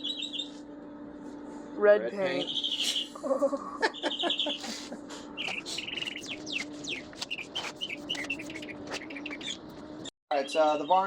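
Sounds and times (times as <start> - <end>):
small birds chirping: 0.0 - 0.7, 2.2 - 3.2, 3.8 - 11.0
steady low hum: 0.0 - 11.0.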